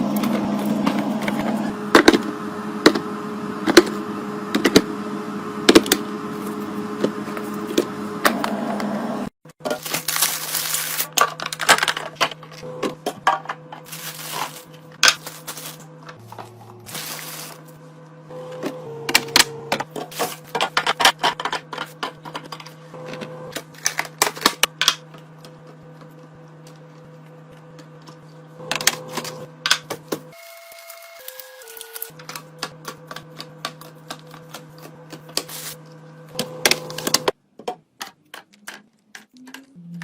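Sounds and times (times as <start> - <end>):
plastic containers clicking and rustling: 9.6 - 15.7.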